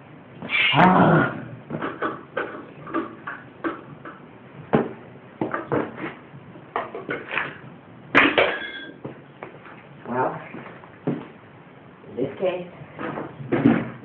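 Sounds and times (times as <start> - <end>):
ringing metallic clank: 8.3 - 9.0.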